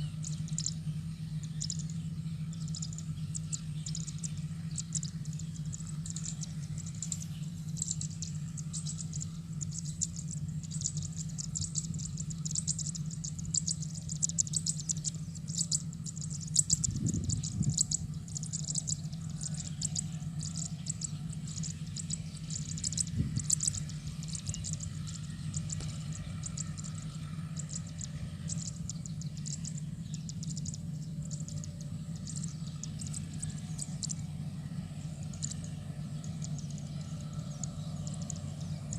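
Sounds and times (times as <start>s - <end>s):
birds chirping: 0.0s - 38.9s
distant combine harvester engine hum: 0.0s - 38.9s
insects chirping: 0.0s - 38.9s.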